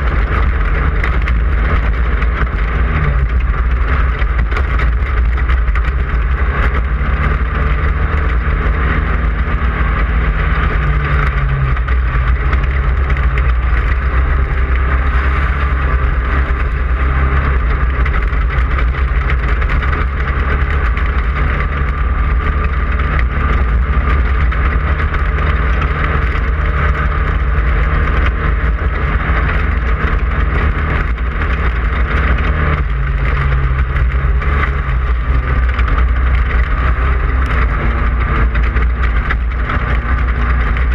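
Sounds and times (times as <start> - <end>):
heavy low rumble: 0.0 - 40.9
race car engine running hard: 0.0 - 40.9.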